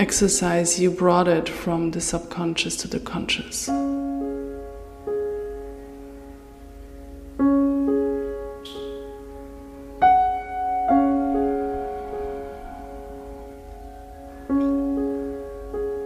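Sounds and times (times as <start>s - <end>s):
slow soft piano music: 3.6s - 16.0s
short high ring: 8.6s - 9.2s.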